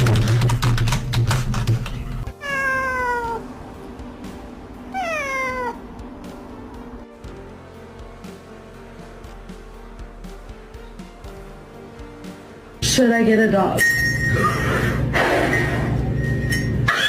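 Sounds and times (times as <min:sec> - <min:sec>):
cat meowing: 0:02.3 - 0:03.5, 0:04.9 - 0:05.8.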